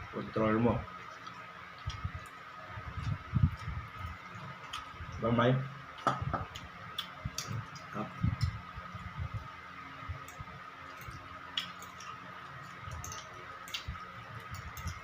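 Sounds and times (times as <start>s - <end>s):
chewing with mouth clicks: 1.0s - 5.2s, 6.0s - 8.6s, 10.2s - 15.0s.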